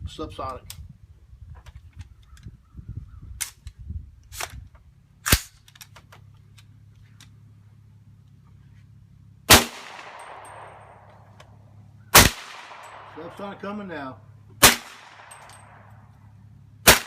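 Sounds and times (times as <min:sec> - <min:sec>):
suppressed rifle shots: 0:09.5 - 0:11.3, 0:12.1 - 0:13.6, 0:14.6 - 0:16.0.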